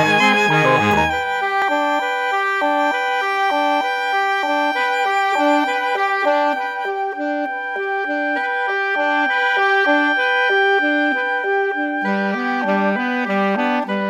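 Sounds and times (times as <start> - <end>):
wind instrument melody: 0.0 - 14.0.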